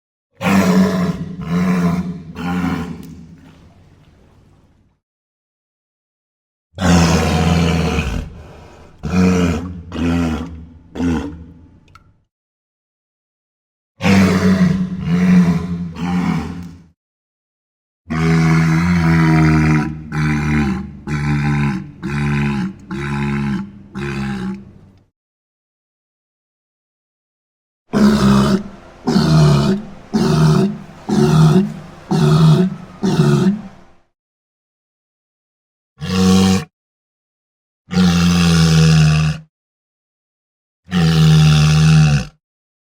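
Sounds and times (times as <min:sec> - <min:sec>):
creature roaring like big cat: 0:00.4 - 0:03.0, 0:06.8 - 0:11.5, 0:14.0 - 0:16.7, 0:18.1 - 0:24.7, 0:27.9 - 0:33.8, 0:36.0 - 0:36.7, 0:37.9 - 0:39.5, 0:40.9 - 0:42.4.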